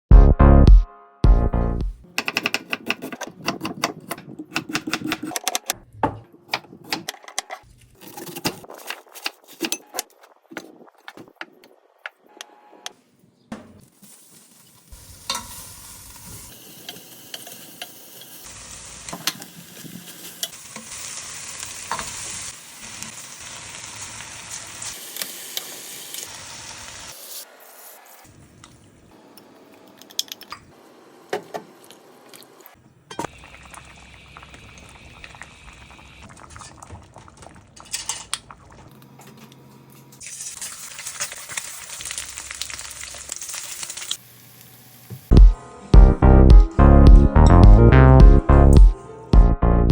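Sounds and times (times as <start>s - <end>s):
food sizzling in a pan: 13.8s - 28.6s, 40.2s - 45.3s.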